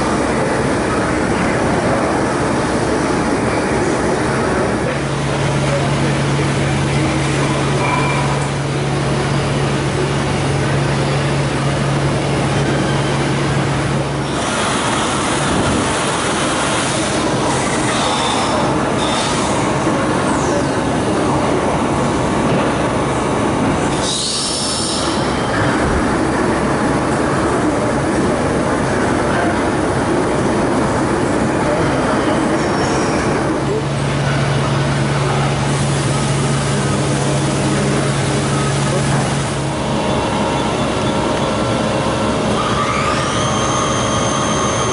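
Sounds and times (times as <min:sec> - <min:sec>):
machine running loudly: 0:00.0 - 0:44.9.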